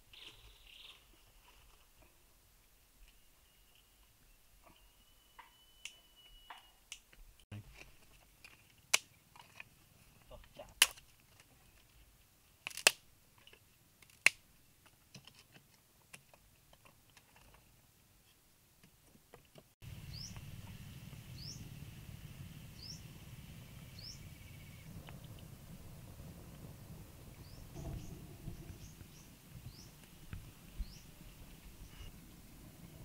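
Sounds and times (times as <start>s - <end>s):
low rumble: 19.8s - 33.0s
bird rising chirp: 20.0s - 25.3s.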